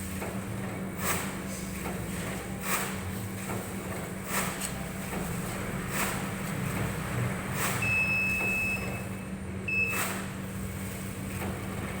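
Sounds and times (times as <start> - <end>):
high steady beep: 7.8 - 9.0, 9.7 - 10.0.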